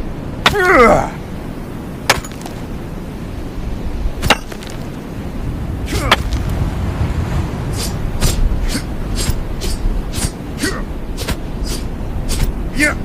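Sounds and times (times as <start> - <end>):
low steady rumble: 0.0 - 12.3
machete chopping strikes: 2.1 - 2.6
machete swish: 7.8 - 10.4, 11.2 - 12.5.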